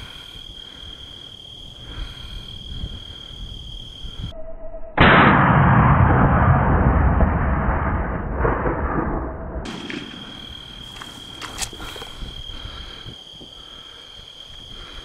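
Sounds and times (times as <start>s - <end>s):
crickets chirping: 0.0s - 5.0s, 9.7s - 15.0s.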